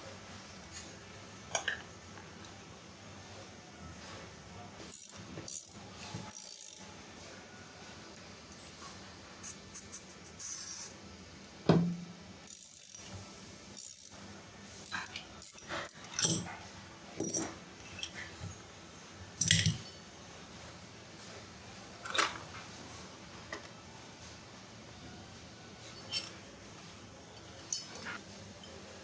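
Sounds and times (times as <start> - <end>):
metallic clinks of tools: 14.9 - 16.5, 17.2 - 18.3, 19.4 - 20.0, 25.8 - 26.4, 27.3 - 28.8.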